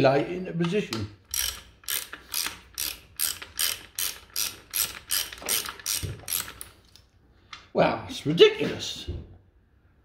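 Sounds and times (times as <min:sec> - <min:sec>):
ratchet wrench pawl rasping: 0:01.2 - 0:06.7.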